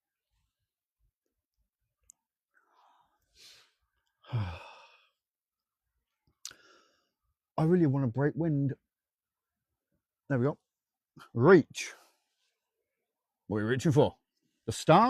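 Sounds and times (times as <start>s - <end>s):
man sighing: 4.2s - 5.2s.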